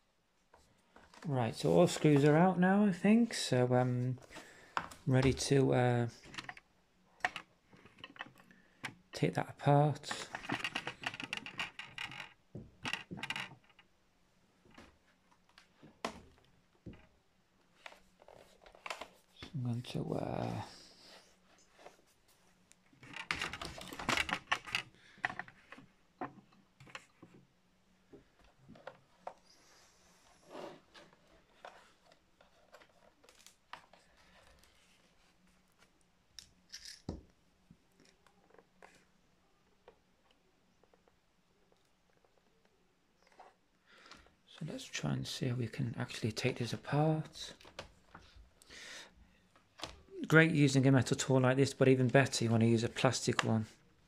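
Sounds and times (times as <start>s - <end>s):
clicks and clinks of screws: 36.4s - 37.1s.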